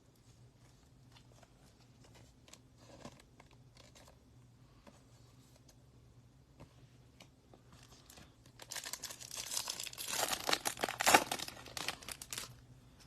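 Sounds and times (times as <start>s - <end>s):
foil wrapper tearing and crinkling: 8.6s - 12.6s.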